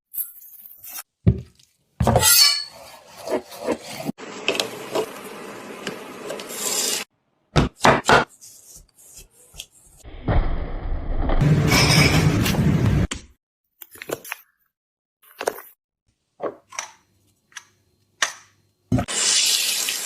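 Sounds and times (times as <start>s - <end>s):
rubbing and scraping: 2.0s - 4.2s.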